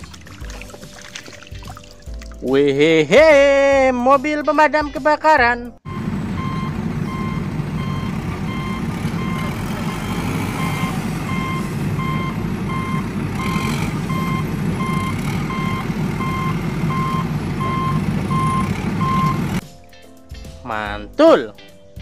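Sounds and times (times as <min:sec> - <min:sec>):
vehicle reversing alarm beeping: 0:05.8 - 0:19.6.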